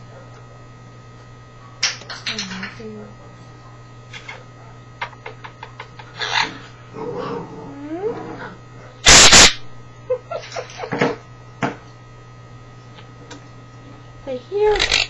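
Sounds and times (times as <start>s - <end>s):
parrot harsh squawk: 6.1s - 6.7s.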